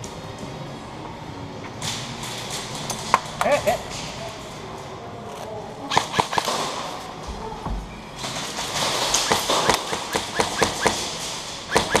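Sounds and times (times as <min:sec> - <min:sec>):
airsoft guns firing: 0:05.9 - 0:07.1, 0:08.4 - 0:12.0.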